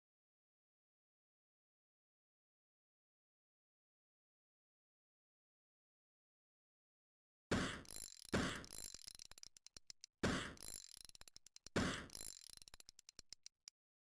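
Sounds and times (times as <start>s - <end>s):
small object bouncing on hard surface: 7.5s - 13.7s.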